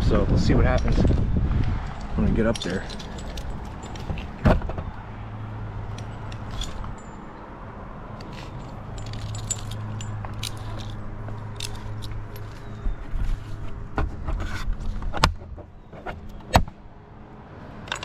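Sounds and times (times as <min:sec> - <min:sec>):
climbing gear clinking: 0:00.6 - 0:01.2, 0:01.8 - 0:05.0, 0:05.7 - 0:13.7, 0:17.8 - 0:18.0.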